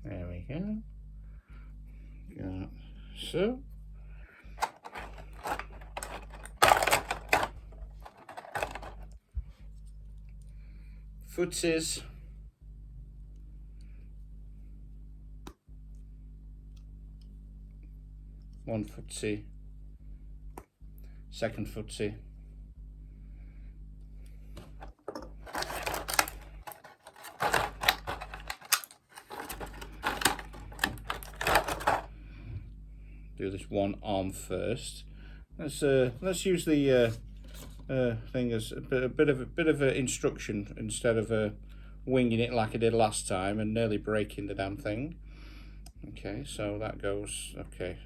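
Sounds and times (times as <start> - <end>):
low electrical hum: 0.0 - 48.0
plastic parts clicking and clacking: 4.6 - 9.2, 24.6 - 32.1.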